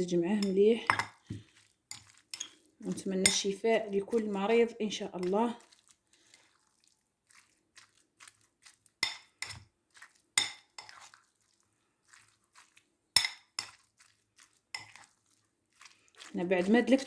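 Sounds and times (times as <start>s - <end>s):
utensil clinking against a bowl: 0.4s - 4.5s, 9.0s - 9.7s, 10.4s - 11.1s, 13.2s - 13.8s, 14.7s - 15.1s.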